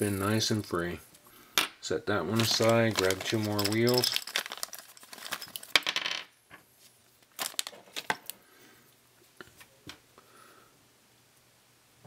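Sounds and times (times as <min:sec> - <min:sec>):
small metal parts clicking: 0:02.4 - 0:06.0.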